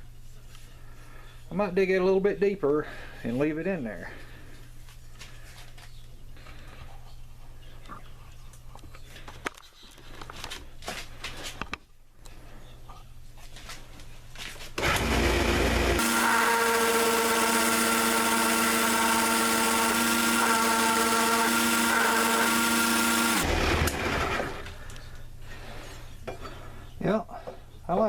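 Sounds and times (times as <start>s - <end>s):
small sander whining: 14.8s - 24.6s.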